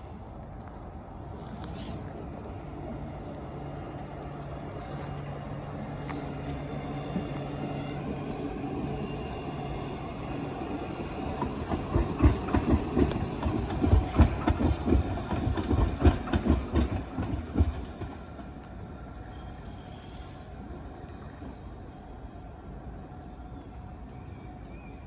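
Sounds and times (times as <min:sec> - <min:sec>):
train wheels clattering over rail joints: 0:06.1 - 0:18.7.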